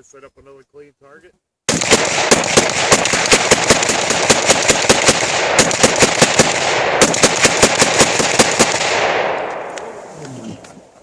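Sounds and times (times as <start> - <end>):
rapid gunfire: 1.7 - 9.4.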